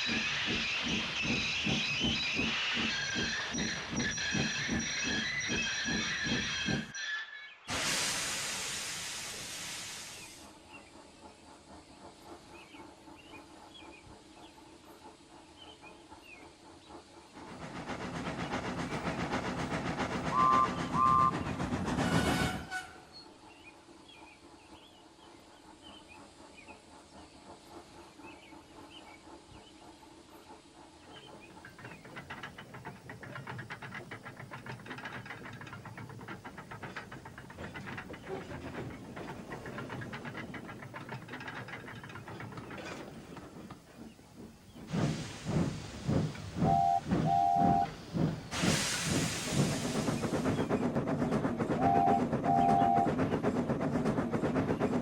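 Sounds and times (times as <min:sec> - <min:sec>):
steam hissing: 0:00.0 - 0:06.8, 0:07.7 - 0:55.0
steam locomotive chuffing: 0:00.0 - 0:07.0, 0:07.7 - 0:55.0
steam whistle toots: 0:20.3 - 0:21.3, 0:22.0 - 0:23.1, 0:46.6 - 0:47.9.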